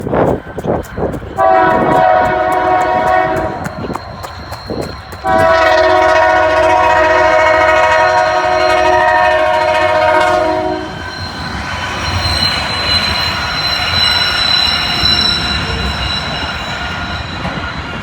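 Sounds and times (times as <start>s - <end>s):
low rumble of train: 0.0s - 18.0s
locomotive air horn chord: 1.4s - 3.8s, 5.2s - 11.0s.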